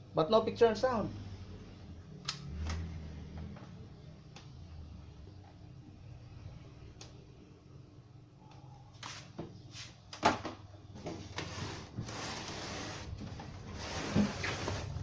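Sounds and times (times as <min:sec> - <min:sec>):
scraping sliding noise: 0:11.3 - 0:15.0.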